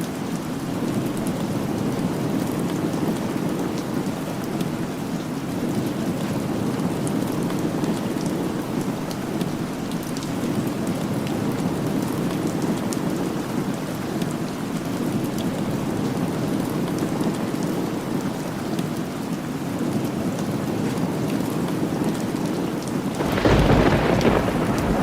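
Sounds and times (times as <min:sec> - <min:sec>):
steady rain hiss: 0:00.0 - 0:25.0.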